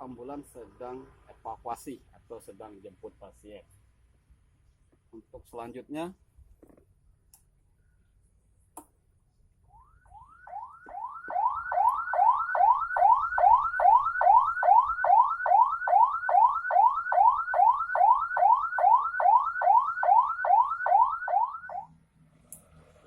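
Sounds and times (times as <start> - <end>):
ambulance siren sweeping: 9.7 - 22.0.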